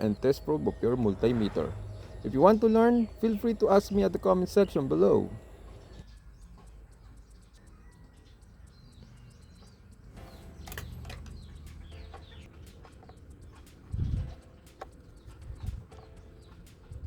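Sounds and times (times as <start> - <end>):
sharp clicks: 0.0 - 17.0
small birds chirping: 0.0 - 17.0
steady low hum: 0.0 - 17.0.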